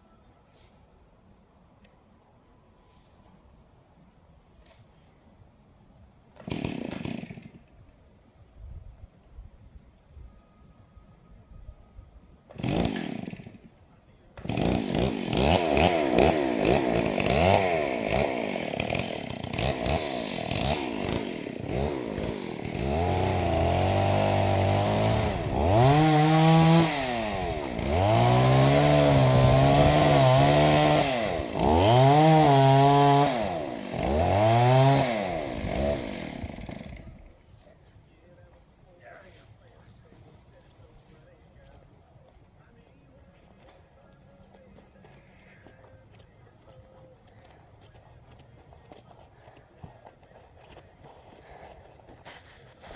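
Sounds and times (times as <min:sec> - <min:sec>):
chainsaw engine revving: 0:06.4 - 0:07.7, 0:12.5 - 0:13.7, 0:14.4 - 0:37.4.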